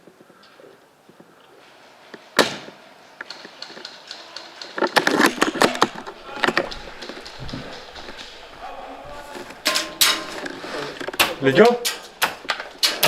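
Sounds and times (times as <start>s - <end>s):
sharp crack: 2.4s - 13.0s
rapid clatter of clicks and knocks: 3.2s - 13.0s.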